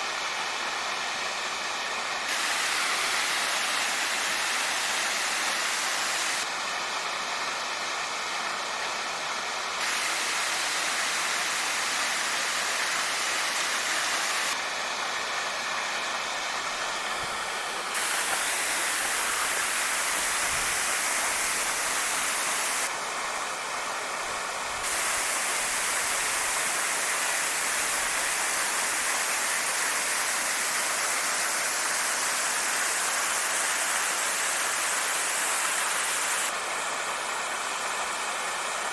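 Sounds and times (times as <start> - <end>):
waterfall rushing: 0.0 - 8.1, 9.7 - 38.9.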